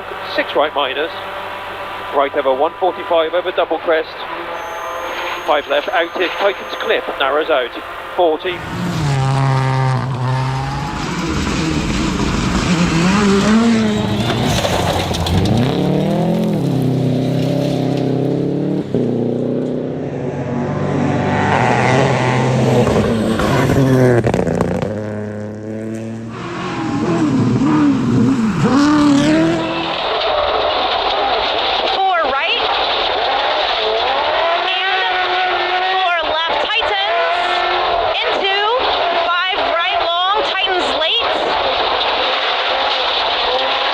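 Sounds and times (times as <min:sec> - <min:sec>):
rally car engine revving: 0:00.0 - 0:43.9.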